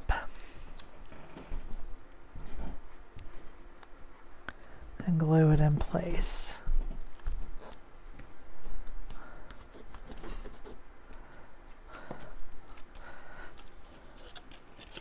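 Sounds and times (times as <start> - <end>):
paper rustling: 11.9 - 15.0.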